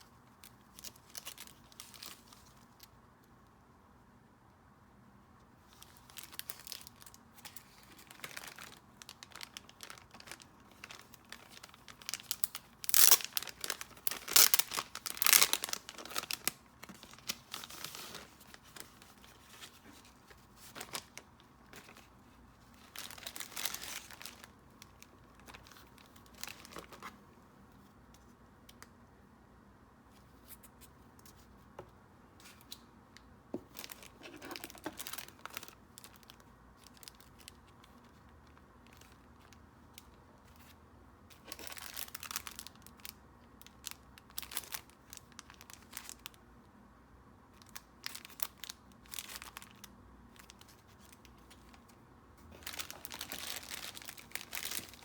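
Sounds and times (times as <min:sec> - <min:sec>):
packaging being torn and crinkled: 0:05.8 - 0:22.1, 0:22.7 - 0:27.1, 0:33.7 - 0:38.1, 0:41.4 - 0:43.1, 0:47.6 - 0:51.8, 0:52.5 - 0:55.0.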